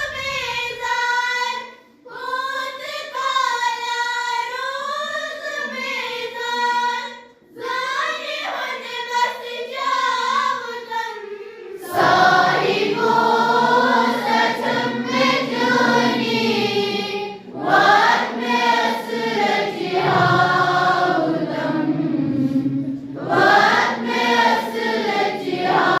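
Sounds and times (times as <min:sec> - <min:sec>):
choir singing: 0:07.5 - 0:26.0.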